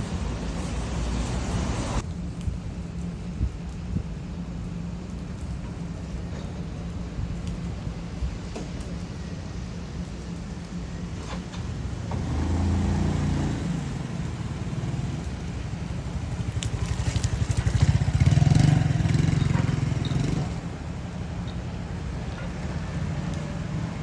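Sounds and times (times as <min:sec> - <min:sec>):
quieter vehicle passing: 0:12.0 - 0:21.2
motorbike engine passing by: 0:12.1 - 0:15.5, 0:16.2 - 0:20.8.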